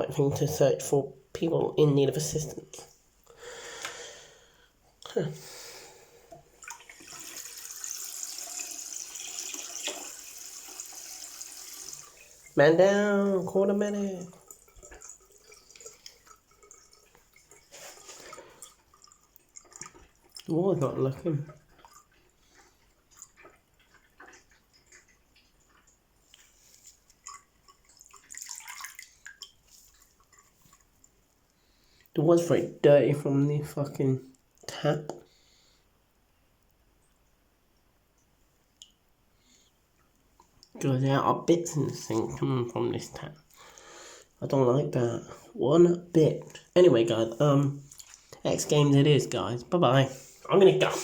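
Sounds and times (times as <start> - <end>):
tap water running into sink: 6.3 - 20.3, 27.2 - 29.5.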